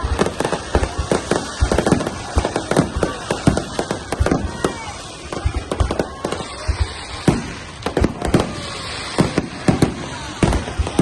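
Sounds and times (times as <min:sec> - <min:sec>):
fireworks shells bursting: 0:00.0 - 0:11.0.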